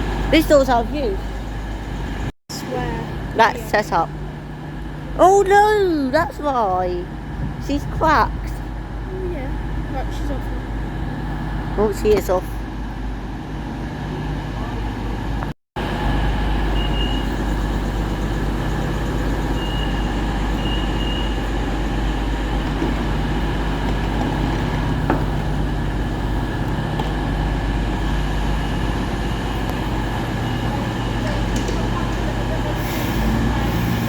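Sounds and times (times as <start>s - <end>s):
vehicle engine droning: 0.0s - 34.0s.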